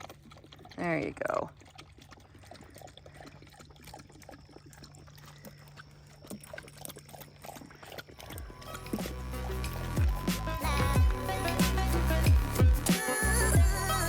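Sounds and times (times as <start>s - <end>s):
dog lapping water: 0.0s - 11.6s
low hum: 8.2s - 14.0s.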